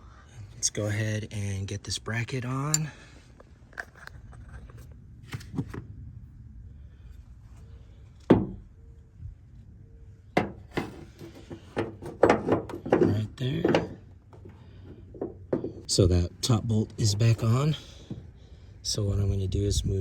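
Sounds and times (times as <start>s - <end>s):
metal bracket clicks and knocks: 10.4s - 15.9s.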